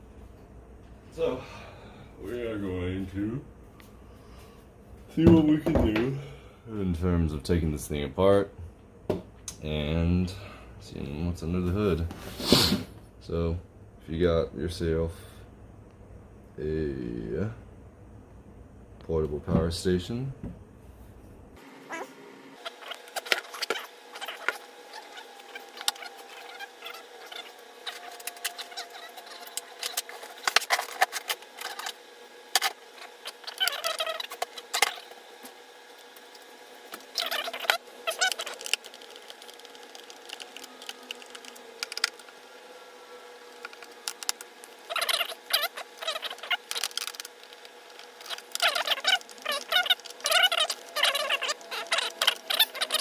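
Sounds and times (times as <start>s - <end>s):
short squeaks: 37.1s - 41.4s, 48.0s - 53.0s.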